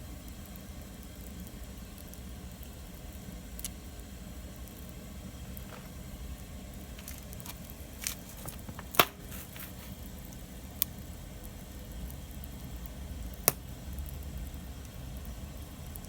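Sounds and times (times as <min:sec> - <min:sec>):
campfire crackling: 0:00.2 - 0:16.0
sharp pops of burning wood: 0:04.6 - 0:14.2.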